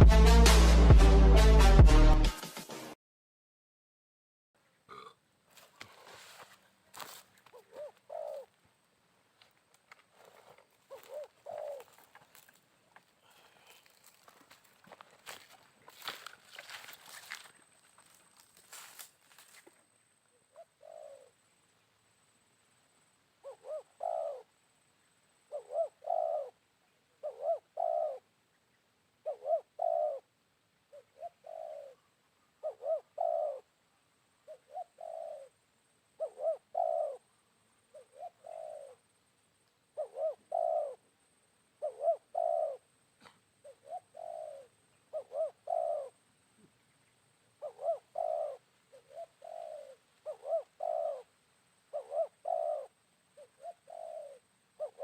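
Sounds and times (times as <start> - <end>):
dove cooing: 7.4 - 8.6, 10.2 - 12.5, 20.4 - 21.4, 23.4 - 24.6, 25.4 - 28.3, 29.2 - 30.3, 30.9 - 33.8, 34.4 - 37.3, 37.9 - 39.1, 39.9 - 41.1, 41.8 - 46.8, 47.6 - 51.3, 51.9 - 55.0.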